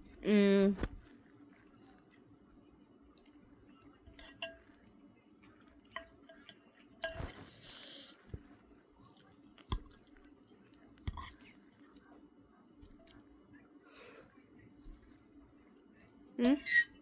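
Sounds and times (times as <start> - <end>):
soft chewing: 0.8 - 16.2
utensil clinking against dish: 4.1 - 4.8, 5.8 - 7.4, 11.1 - 11.4, 16.5 - 17.0.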